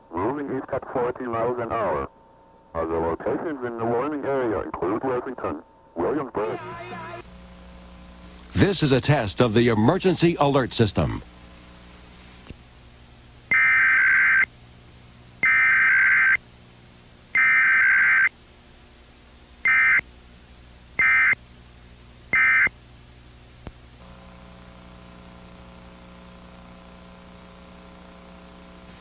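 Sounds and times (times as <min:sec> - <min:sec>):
buzzy digital data bursts: 0:13.5 - 0:14.5, 0:15.4 - 0:16.4, 0:17.4 - 0:18.3.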